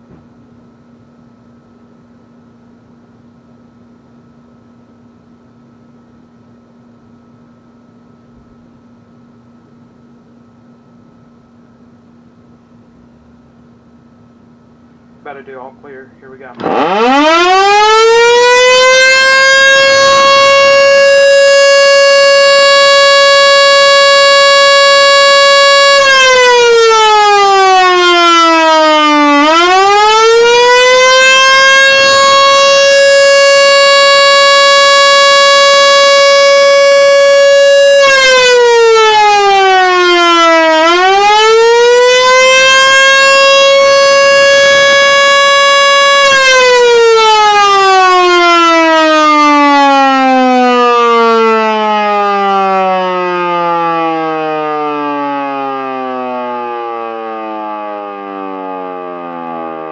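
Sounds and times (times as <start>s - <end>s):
siren wailing: 16.4s - 59.9s.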